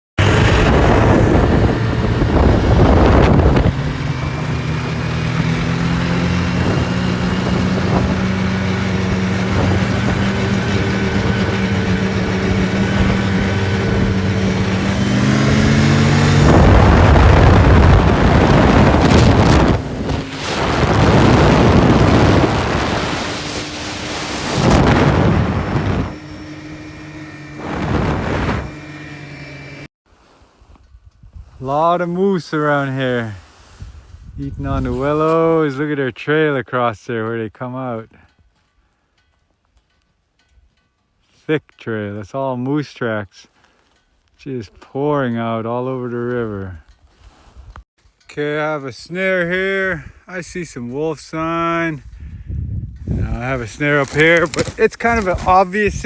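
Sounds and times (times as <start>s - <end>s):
wind buffeting microphone: 0.2s - 29.7s, 33.8s - 35.2s, 52.0s - 56.0s
vehicle engine running: 0.2s - 29.9s, 53.0s - 56.0s.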